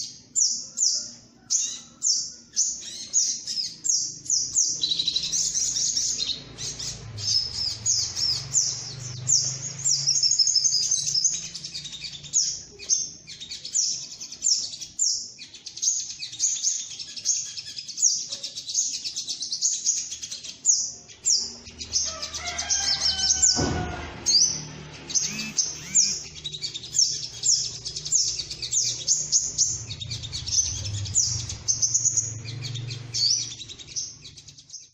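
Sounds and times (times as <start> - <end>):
bird calling sharp high chips: 21.4 - 34.0
falling whistles: 22.1 - 26.3
sharp knock: 23.3 - 24.5.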